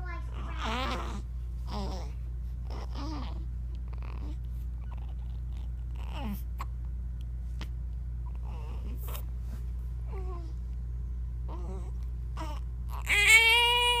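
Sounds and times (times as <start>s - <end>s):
small squeaky vocal sounds: 0.2s - 6.7s.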